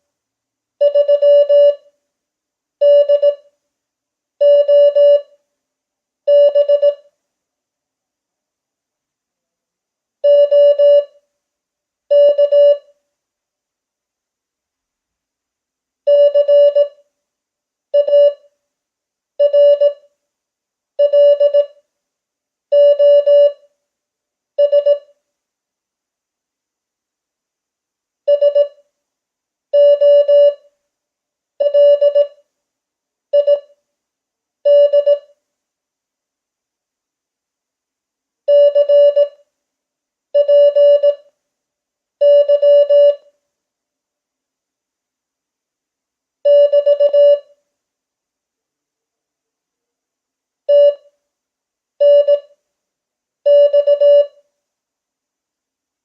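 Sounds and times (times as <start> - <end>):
morse code beeps: 38.5 - 39.3, 40.4 - 41.2, 42.2 - 43.2, 50.7 - 51.0, 52.0 - 52.4, 53.5 - 54.3.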